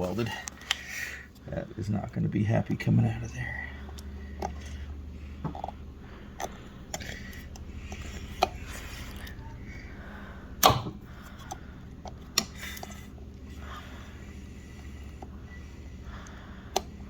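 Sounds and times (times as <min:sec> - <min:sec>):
low hum: 0:00.0 - 0:17.0.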